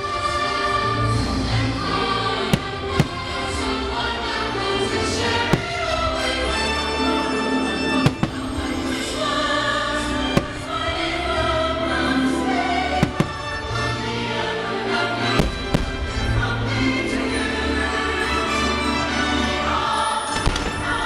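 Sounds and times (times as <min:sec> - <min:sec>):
choral christmas music: 0:00.0 - 0:21.0
firework bangs: 0:02.5 - 0:03.7, 0:05.3 - 0:06.2, 0:08.0 - 0:08.9, 0:10.2 - 0:11.1, 0:13.0 - 0:13.8, 0:15.4 - 0:16.5.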